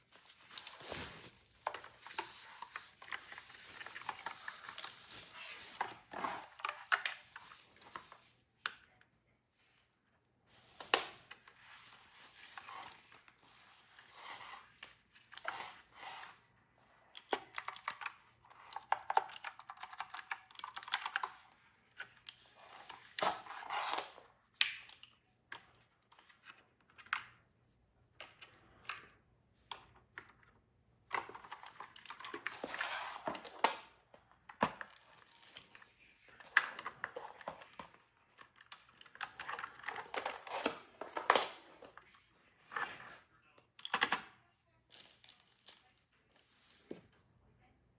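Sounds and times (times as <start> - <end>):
packaging rustling: 0.0 - 8.4.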